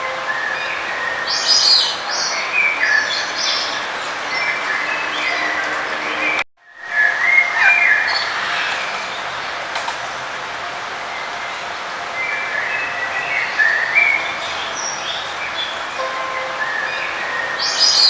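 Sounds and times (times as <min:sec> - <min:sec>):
songbirds chirping: 0:00.0 - 0:18.0
steady background hiss: 0:06.7 - 0:18.0.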